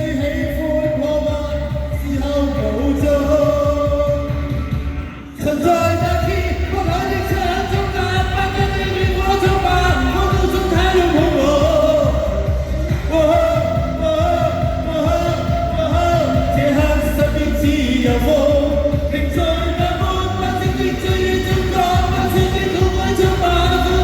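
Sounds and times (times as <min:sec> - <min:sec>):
person singing long notes: 0:00.0 - 0:24.0
steady drum beat: 0:06.0 - 0:24.0.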